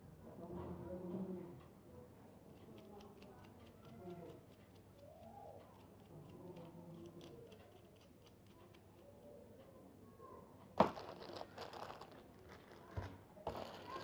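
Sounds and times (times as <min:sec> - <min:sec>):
handling packaging: 0:10.8 - 0:14.0
rustling: 0:10.8 - 0:14.0.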